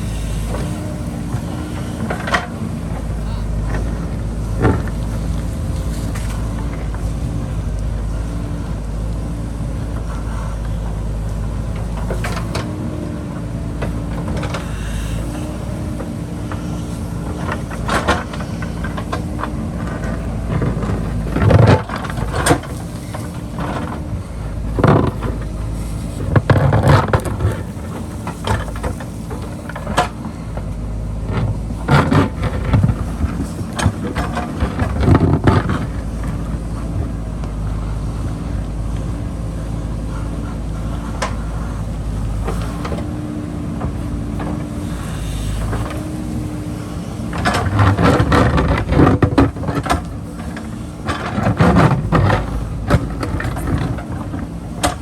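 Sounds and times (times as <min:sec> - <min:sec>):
diesel engine running: 0:00.0 - 0:55.0
digging knocks and scrapes: 0:00.1 - 0:55.0.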